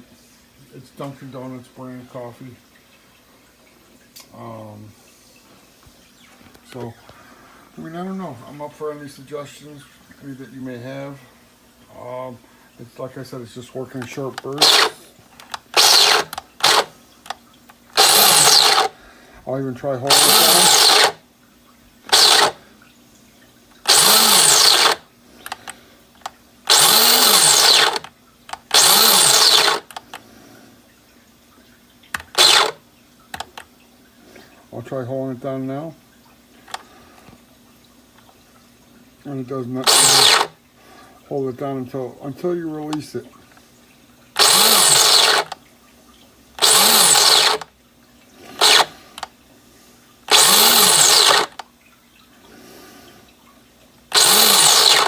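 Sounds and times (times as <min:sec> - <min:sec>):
coffee grinder motor bursts: 0:14.0 - 0:17.0, 0:17.9 - 0:19.0, 0:20.1 - 0:21.2, 0:22.0 - 0:22.6, 0:23.8 - 0:30.2, 0:32.1 - 0:32.8, 0:39.8 - 0:40.6, 0:44.4 - 0:45.6, 0:46.6 - 0:47.7, 0:48.5 - 0:49.3, 0:50.2 - 0:51.6, 0:54.1 - 0:55.0
small clicks: 0:23.8 - 0:30.2, 0:32.0 - 0:33.7, 0:48.6 - 0:49.4.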